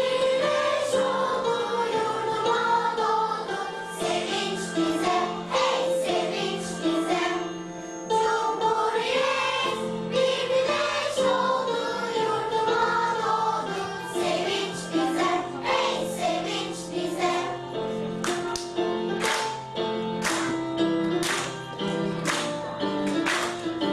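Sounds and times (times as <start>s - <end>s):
choir singing: 0.0s - 18.0s.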